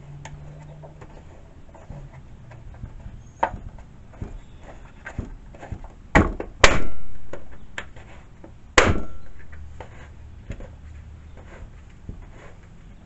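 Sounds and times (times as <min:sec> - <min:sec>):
sharp ringing knocks: 0:08.8 - 0:09.7.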